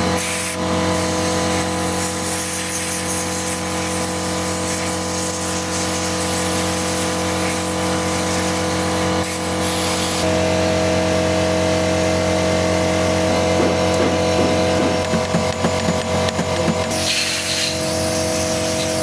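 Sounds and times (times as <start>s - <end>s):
motor humming: 6.0s - 19.0s.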